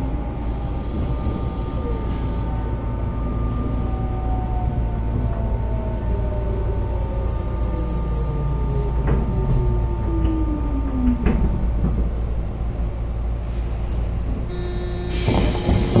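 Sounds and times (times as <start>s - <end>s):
train running rumble: 0.0s - 16.0s
electric train chopper tones: 14.6s - 16.0s.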